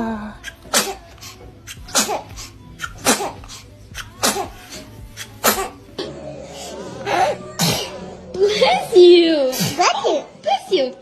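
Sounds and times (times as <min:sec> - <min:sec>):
baby sneezing: 0:00.4 - 0:01.0, 0:01.7 - 0:05.8, 0:07.6 - 0:08.0, 0:09.5 - 0:10.0.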